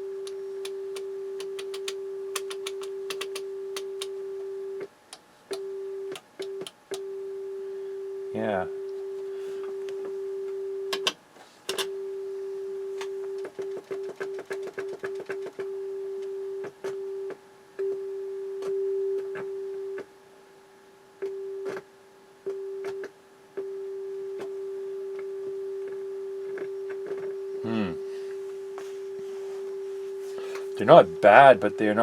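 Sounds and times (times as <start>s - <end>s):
steady test tone: 23.7s - 32.0s.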